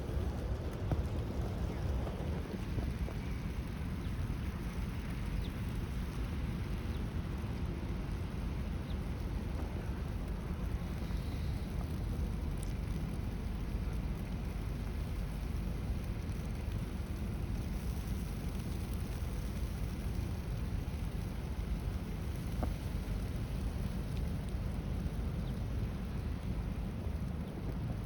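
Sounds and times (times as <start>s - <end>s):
wind noise: 0.0s - 15.9s
traffic hum: 0.0s - 28.0s.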